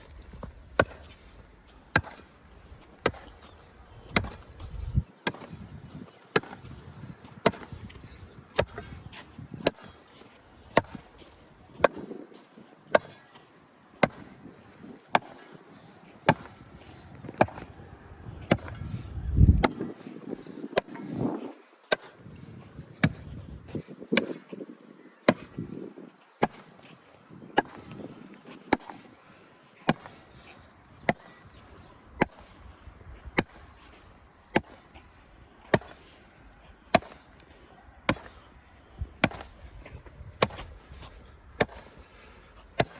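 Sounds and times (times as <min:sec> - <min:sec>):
low rumbling: 0:18.0 - 0:19.7.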